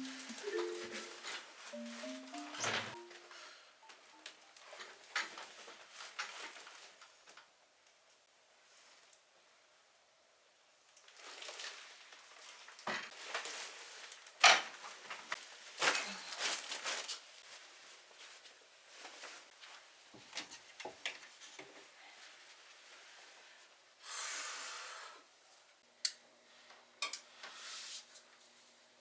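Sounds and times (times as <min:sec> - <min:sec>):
crinkling and rustling: 0:00.0 - 0:03.3, 0:04.2 - 0:07.5, 0:10.9 - 0:23.8.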